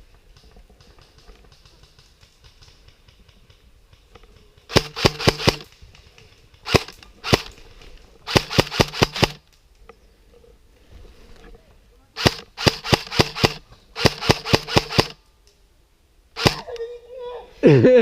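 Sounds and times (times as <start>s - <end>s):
airsoft gun firing: 4.7s - 5.8s, 6.6s - 7.6s, 8.3s - 9.4s, 12.2s - 15.2s, 16.4s - 16.7s.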